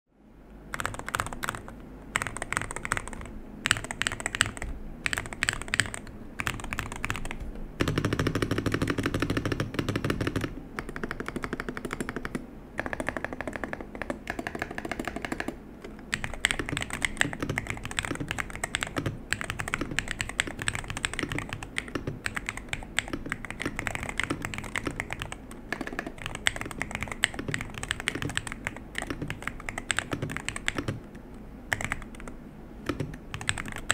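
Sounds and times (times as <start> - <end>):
keyboard typing: 0.7 - 33.9.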